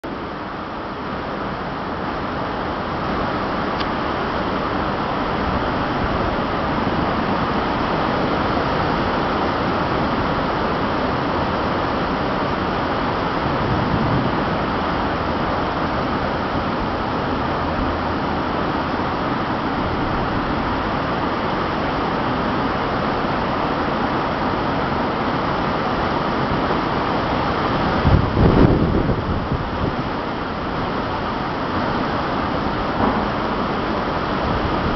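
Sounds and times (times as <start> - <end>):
storm wind rushing: 12.5 - 18.3, 27.5 - 34.9.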